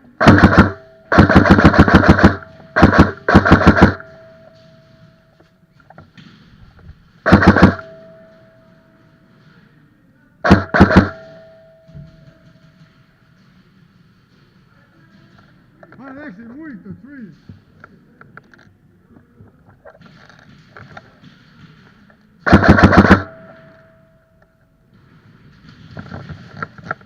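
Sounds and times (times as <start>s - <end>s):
airsoft gun firing bursts: 0.2s - 4.1s, 7.2s - 7.9s, 10.4s - 11.3s, 22.4s - 23.4s.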